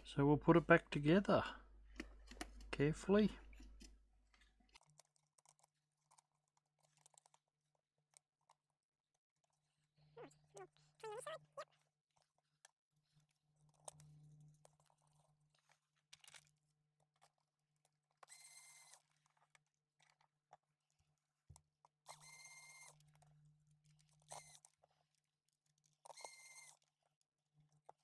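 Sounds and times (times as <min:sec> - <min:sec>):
small parts clicking and tapping: 0:01.8 - 0:08.8, 0:12.1 - 0:28.0
small electric motor whirring: 0:18.3 - 0:19.0, 0:22.1 - 0:23.0, 0:24.3 - 0:24.7, 0:26.1 - 0:26.8.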